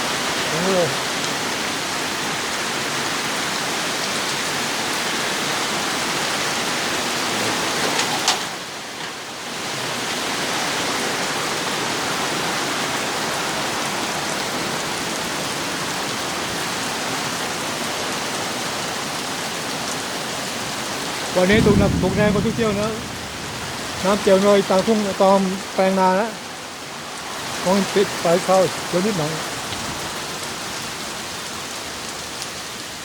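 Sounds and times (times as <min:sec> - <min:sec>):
heavy rain hissing: 0:00.0 - 0:01.6, 0:20.2 - 0:33.0.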